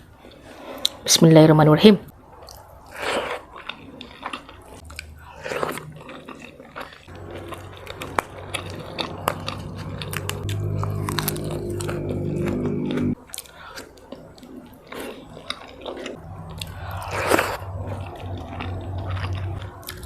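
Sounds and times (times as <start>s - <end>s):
person chewing crunchy food: 2.4s - 20.0s
low hum: 4.9s - 13.2s, 16.1s - 20.0s.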